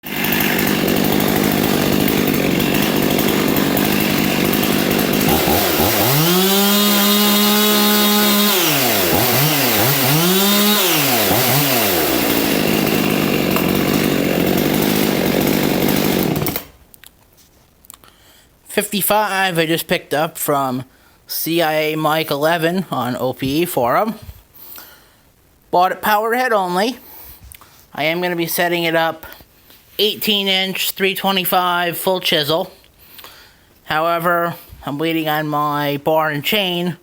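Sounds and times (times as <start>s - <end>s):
chainsaw idling and revving: 0.0s - 16.8s.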